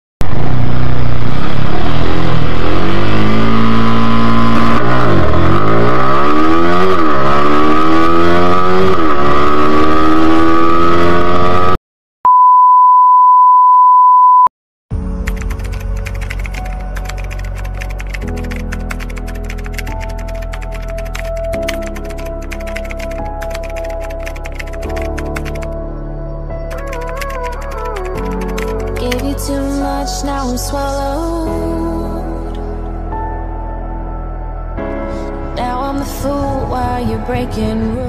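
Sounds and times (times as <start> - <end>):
motorcycle engine accelerating: 0.2 - 11.8
steady high beep: 12.3 - 14.5
background music: 14.9 - 38.0.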